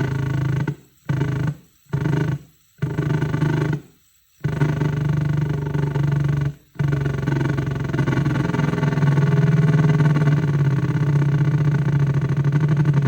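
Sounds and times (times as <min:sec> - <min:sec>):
loudspeaker pulsing low buzz: 0:04.4 - 0:13.0.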